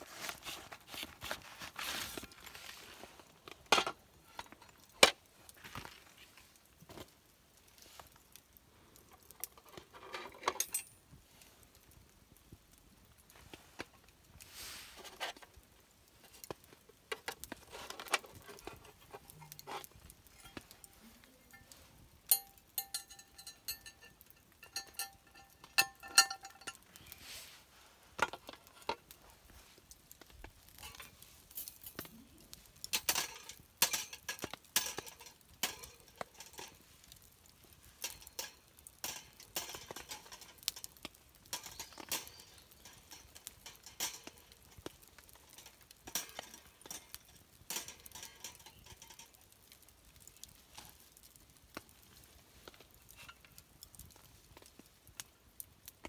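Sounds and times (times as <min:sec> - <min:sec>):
utensils and cookware clinking: 0:17.9 - 0:26.8, 0:32.9 - 0:36.8, 0:38.0 - 0:49.4.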